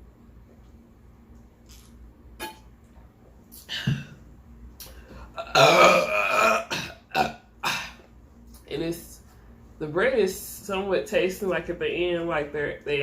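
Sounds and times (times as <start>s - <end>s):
person burping: 3.6s - 4.2s, 5.4s - 8.1s.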